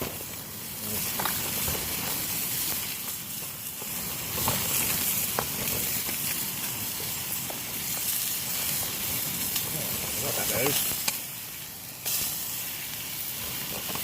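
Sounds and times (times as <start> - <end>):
steak sizzling in a pan: 0.0 - 14.0.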